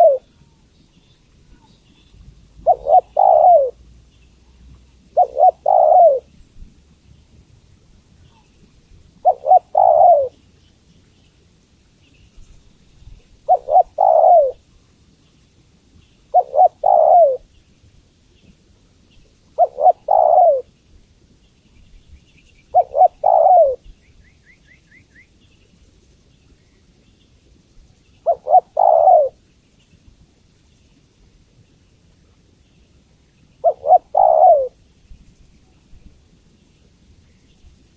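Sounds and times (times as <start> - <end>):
dove cooing: 0.0 - 0.4, 2.6 - 3.8, 5.1 - 6.4, 9.2 - 10.4, 13.4 - 14.6, 16.3 - 17.5, 19.6 - 20.7, 22.7 - 23.9, 28.2 - 29.4, 33.6 - 34.8.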